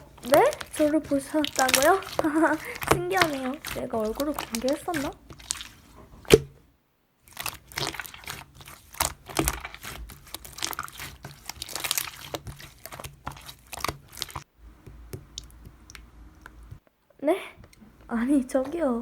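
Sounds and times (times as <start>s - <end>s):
slime squeezed crackling: 0.0s - 6.6s, 7.2s - 16.8s.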